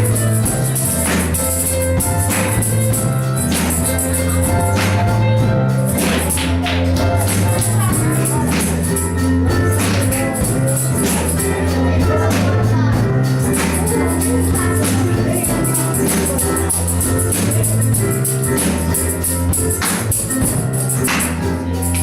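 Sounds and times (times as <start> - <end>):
gospel band music: 0.0 - 22.0
tambourine shaken: 0.0 - 22.0
people singing: 10.0 - 17.6.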